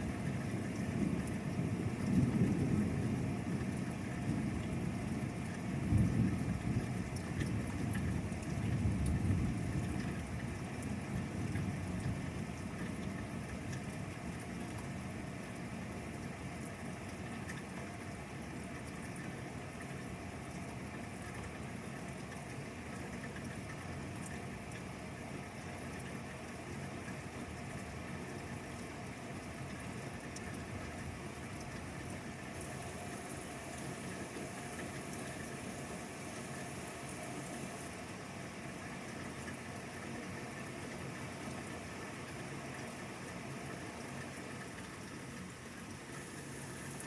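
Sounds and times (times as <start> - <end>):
thunder rumbling: 0.8 - 5.2
rain hissing: 25.0 - 47.0.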